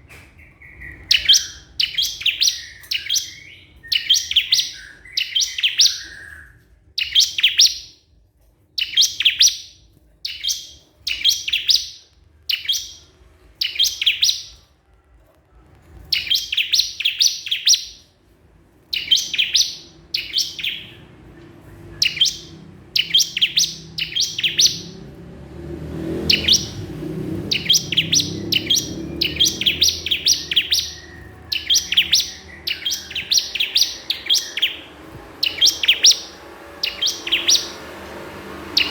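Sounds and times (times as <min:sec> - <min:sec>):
bird singing high bright notes: 0:00.4 - 0:08.0, 0:08.8 - 0:14.6, 0:16.1 - 0:18.1, 0:18.9 - 0:25.1, 0:26.3 - 0:38.9
low rumbling noise: 0:18.0 - 0:38.9.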